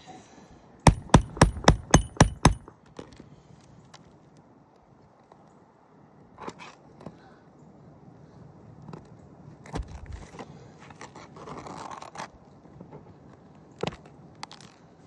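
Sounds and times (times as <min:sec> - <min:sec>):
sharp metal knocks: 0:00.9 - 0:02.7.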